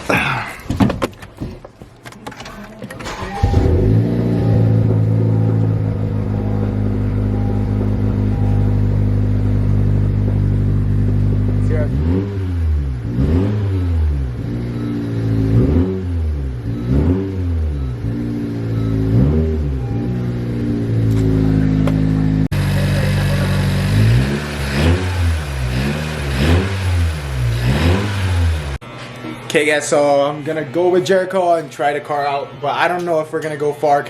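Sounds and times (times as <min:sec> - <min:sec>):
car engine revving: 0:02.8 - 0:28.8.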